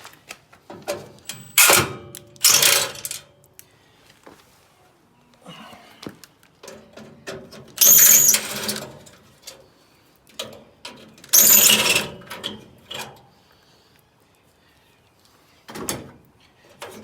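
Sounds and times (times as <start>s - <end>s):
metal parts clicking and knocking: 2.4s - 3.2s, 7.8s - 8.9s, 11.2s - 12.6s.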